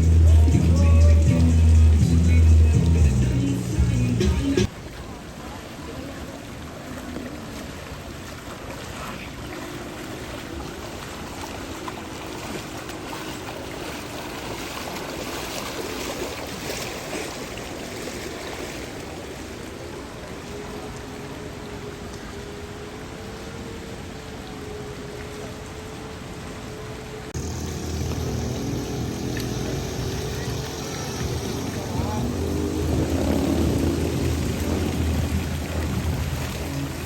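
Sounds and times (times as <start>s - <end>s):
people wading through water: 0.0s - 37.0s
faint steady hum: 9.2s - 37.0s.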